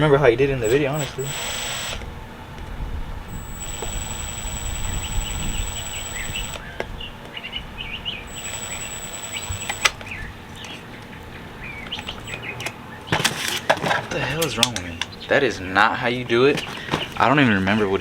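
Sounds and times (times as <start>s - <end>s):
sharp clicks: 0.6s - 2.0s, 3.3s - 6.6s, 8.3s - 10.1s, 11.9s - 12.7s
small birds chirping: 0.6s - 2.0s, 3.3s - 12.7s.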